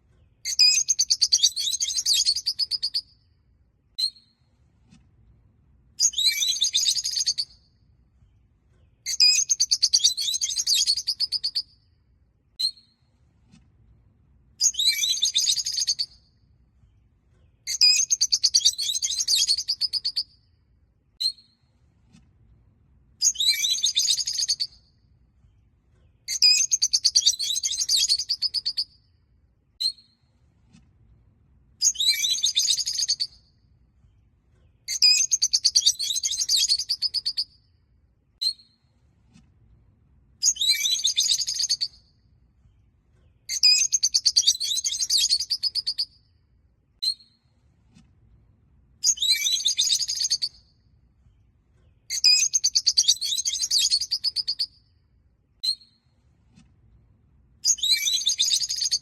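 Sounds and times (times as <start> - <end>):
short bird chirps: 0.2 - 3.2, 6.0 - 7.7, 8.8 - 11.8, 12.6 - 13.2, 14.6 - 16.3, 17.4 - 20.4, 23.2 - 24.9, 26.0 - 29.0, 31.8 - 33.5, 34.6 - 37.6, 40.4 - 42.2, 43.2 - 46.2, 49.0 - 50.8, 51.8 - 54.9, 55.6 - 56.3, 57.6 - 59.0.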